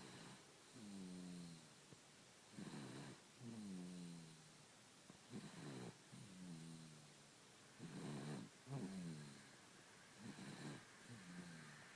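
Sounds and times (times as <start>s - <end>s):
baby snoring: 7.8s - 9.5s, 10.2s - 11.9s.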